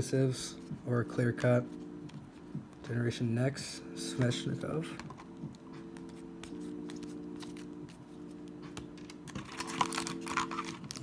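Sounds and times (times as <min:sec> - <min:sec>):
cards rustling: 0:05.9 - 0:11.0.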